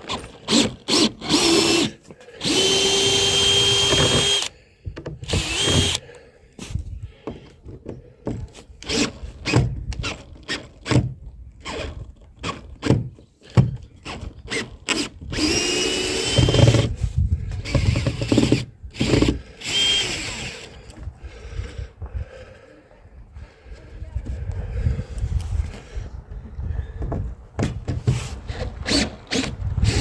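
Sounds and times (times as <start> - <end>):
power drill whining: 0.0 - 6.1, 8.8 - 13.0, 14.0 - 21.0, 28.1 - 30.0.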